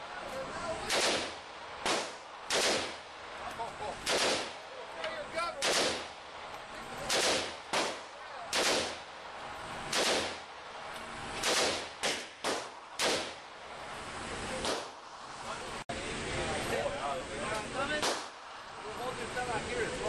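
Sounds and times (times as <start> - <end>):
gunshots: 0.8 - 3.1, 4.0 - 4.8, 5.5 - 6.2, 7.0 - 9.2, 9.8 - 10.6, 11.3 - 13.5, 14.6 - 15.0, 18.0 - 18.4.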